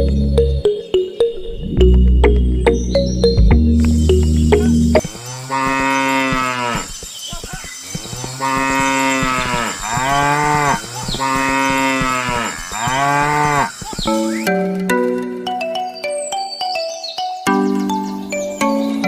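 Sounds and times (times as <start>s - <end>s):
cow mooing: 5.4s - 6.9s, 8.2s - 13.7s.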